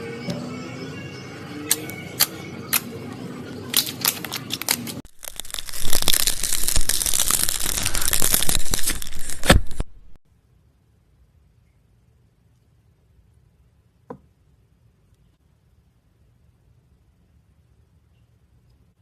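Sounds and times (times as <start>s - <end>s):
slime popping and crackling: 3.8s - 10.1s.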